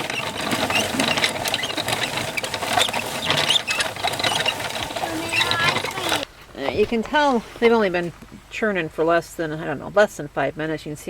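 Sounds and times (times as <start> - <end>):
ice and salt grinding: 0.0 - 7.8
crank gears rattling: 0.0 - 8.5.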